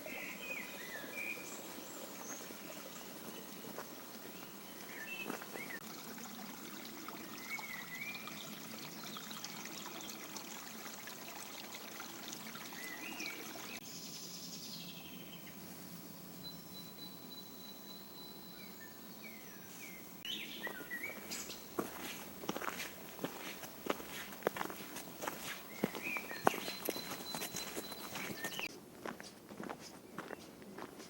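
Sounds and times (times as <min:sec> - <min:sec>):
stream trickling: 0:00.0 - 0:13.8, 0:19.3 - 0:28.7
bird chirps: 0:16.4 - 0:23.5, 0:24.1 - 0:28.7.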